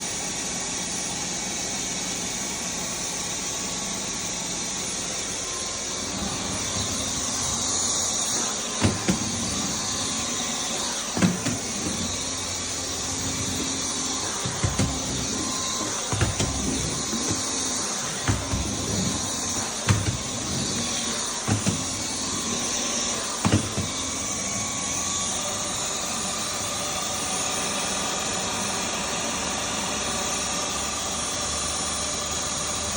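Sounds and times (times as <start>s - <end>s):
vacuum cleaner running: 0.0s - 32.9s
knocks: 8.8s - 9.7s, 14.4s - 17.6s, 18.2s - 19.3s, 19.9s - 20.9s, 23.4s - 24.0s.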